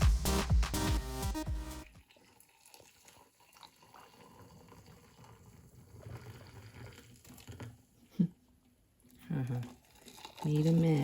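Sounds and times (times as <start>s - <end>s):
electronic music with a beat: 0.0s - 2.0s.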